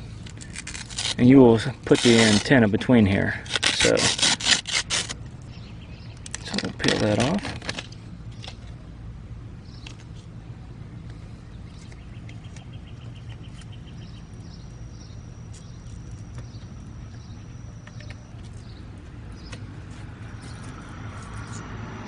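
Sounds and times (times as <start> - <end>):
steady low hum: 0.0 - 22.0
birds singing: 5.4 - 7.4, 8.1 - 21.9.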